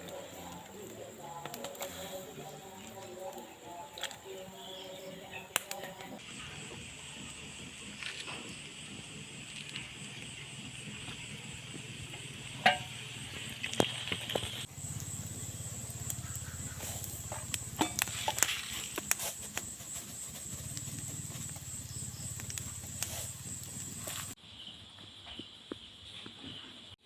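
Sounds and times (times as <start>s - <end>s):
low hum and hiss: 6.1s - 24.4s.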